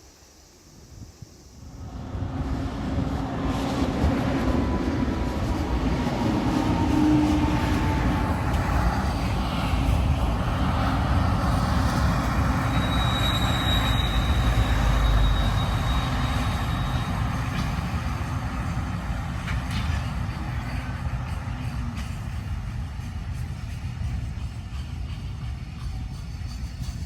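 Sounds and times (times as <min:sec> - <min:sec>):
train rumbling past: 0:00.3 - 0:27.0
high wheel squeal: 0:04.9 - 0:20.8.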